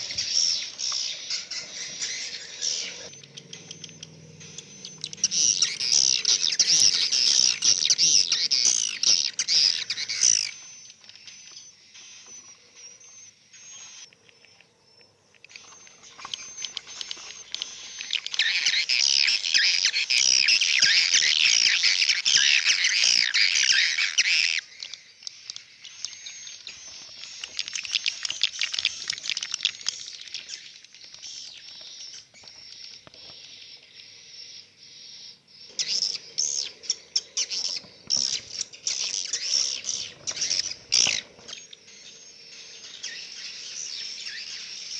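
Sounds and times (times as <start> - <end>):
swiftlets twittering: 0.0 - 11.4.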